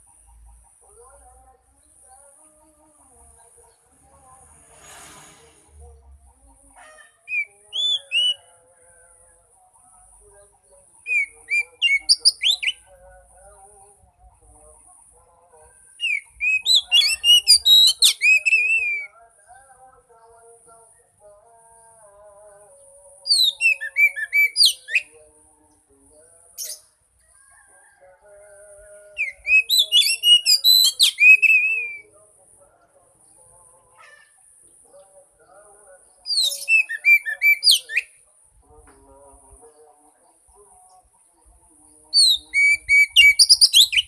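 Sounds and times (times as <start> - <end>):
bird whistling song: 7.3 - 8.5, 11.0 - 12.8, 16.0 - 19.1, 23.3 - 25.2, 29.1 - 32.1, 36.2 - 38.2, 42.2 - 44.0.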